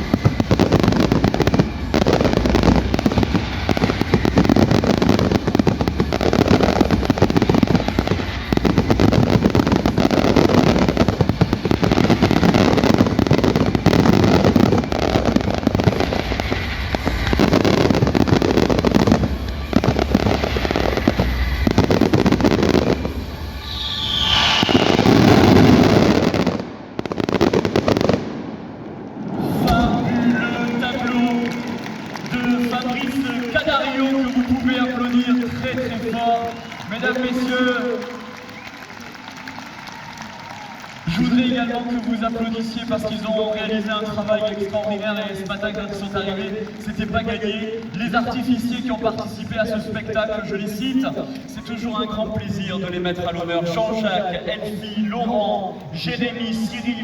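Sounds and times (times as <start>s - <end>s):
rising firework whistle: 0.0s - 41.6s
fireworks bangs and crackling: 0.0s - 57.0s.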